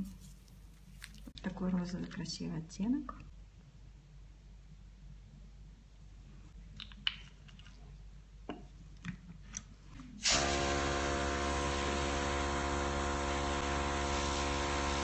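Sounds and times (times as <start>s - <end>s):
hiss of air: 10.2s - 12.4s
airbrush compressor humming: 10.2s - 15.0s.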